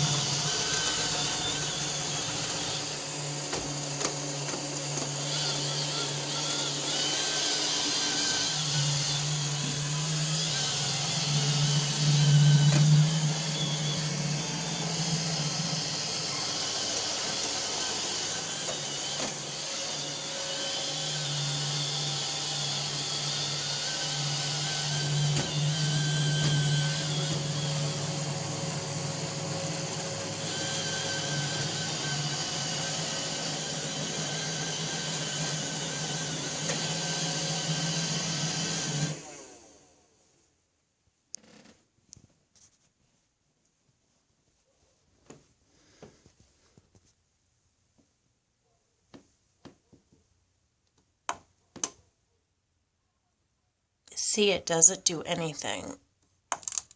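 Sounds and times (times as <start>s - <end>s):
robot vacuum running: 0.0s - 39.8s.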